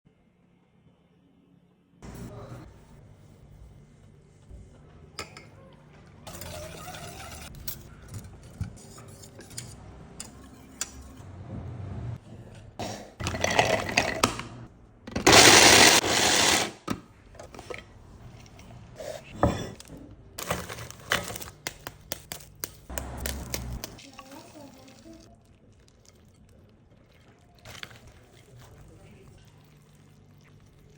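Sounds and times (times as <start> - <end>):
dishes and utensils clinking: 5.1 - 5.6, 19.3 - 21.5.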